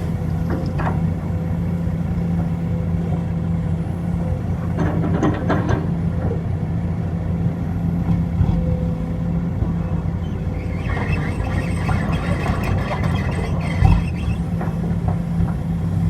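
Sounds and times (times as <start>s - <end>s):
heavy diesel engine running: 0.0s - 16.0s.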